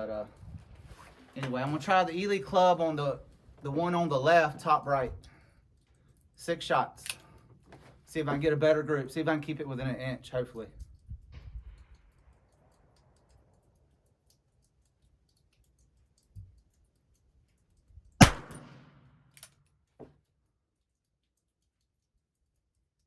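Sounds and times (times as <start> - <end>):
revolver gunshot: 18.2 - 19.0.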